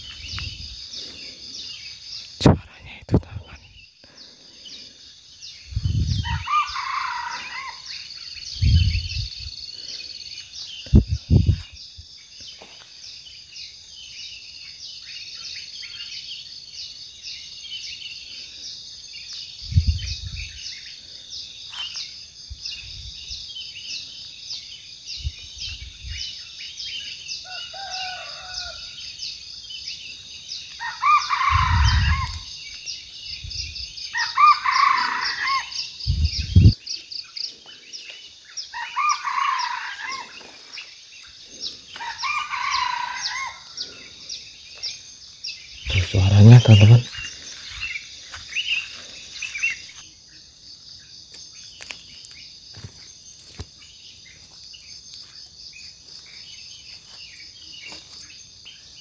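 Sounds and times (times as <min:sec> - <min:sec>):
junglefowl crowing: 0:06.2 - 0:08.0, 0:27.4 - 0:29.0, 0:30.8 - 0:32.5, 0:34.2 - 0:35.8, 0:38.7 - 0:40.5, 0:41.9 - 0:43.8.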